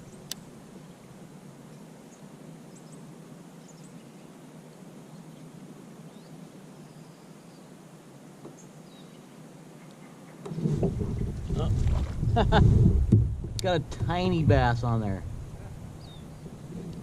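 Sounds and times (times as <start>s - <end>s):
low background rush: 0.0s - 17.0s
faint bird chirps: 5.0s - 7.8s, 15.6s - 16.5s.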